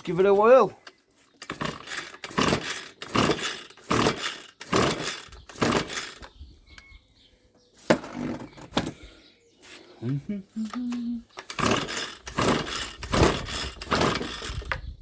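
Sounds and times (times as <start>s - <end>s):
recoil starter rope pulls: 0.4s - 6.3s, 10.7s - 14.9s
engine cranking: 0.8s - 6.4s, 10.6s - 15.0s.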